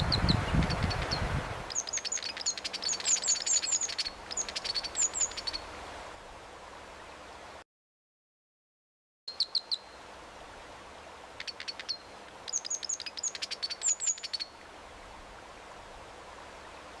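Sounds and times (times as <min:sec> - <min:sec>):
bird high-pitched calls: 0:00.0 - 0:05.7, 0:09.3 - 0:10.0, 0:11.4 - 0:14.6
background hiss: 0:00.0 - 0:07.6, 0:09.3 - 0:17.0.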